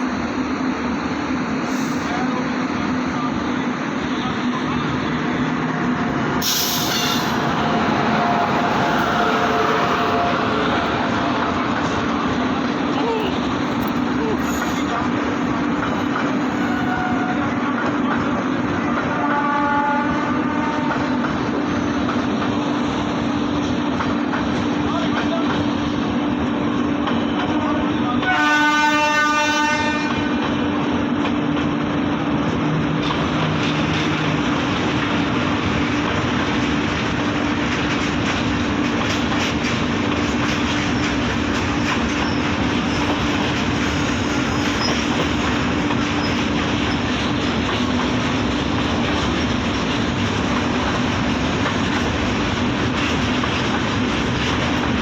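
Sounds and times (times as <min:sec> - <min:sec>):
train hum: 0:00.0 - 0:55.0
locomotive horn: 0:06.7 - 0:11.6, 0:16.5 - 0:17.6, 0:19.1 - 0:21.3, 0:27.4 - 0:30.4
train wheels clattering: 0:29.9 - 0:55.0.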